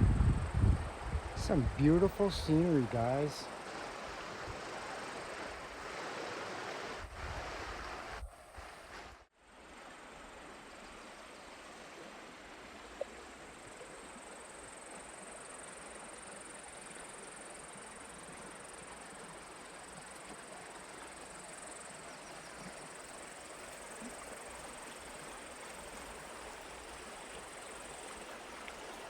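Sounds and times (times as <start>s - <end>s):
soft outdoor hiss: 0.0s - 29.0s
insects trilling: 13.2s - 29.0s.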